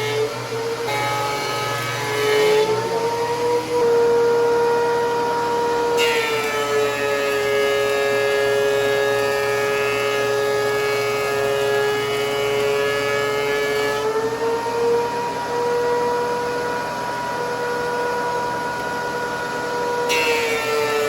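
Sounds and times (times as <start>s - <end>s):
shop vac running: 0.0s - 21.0s
thickness planer motor whine: 0.0s - 21.0s.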